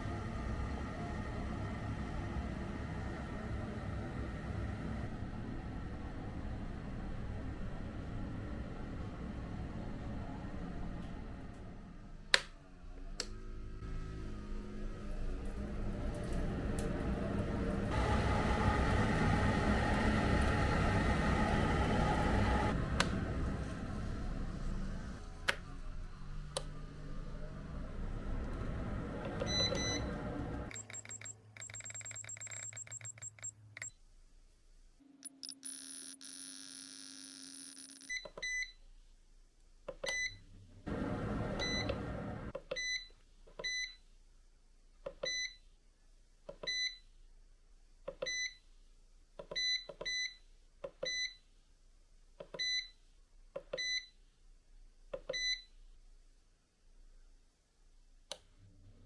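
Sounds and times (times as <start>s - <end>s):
fast clicks: 30.7s - 33.9s
short electronic beeps: 30.7s - 34.0s.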